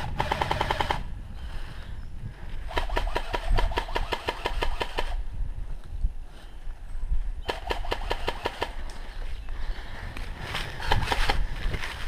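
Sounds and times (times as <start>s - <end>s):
airsoft gun firing bursts: 0.0s - 1.1s, 2.7s - 5.2s, 7.4s - 8.8s, 10.8s - 11.4s.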